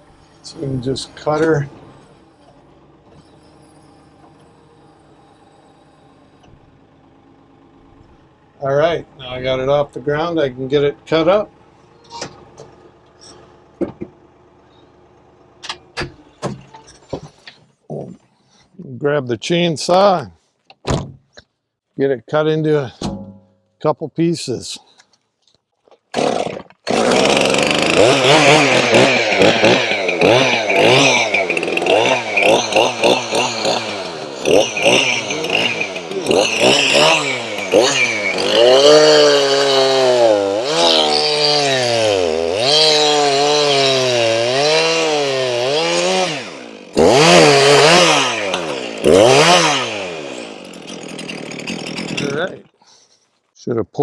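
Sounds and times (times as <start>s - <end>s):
chainsaw cutting log: 26.0s - 52.8s.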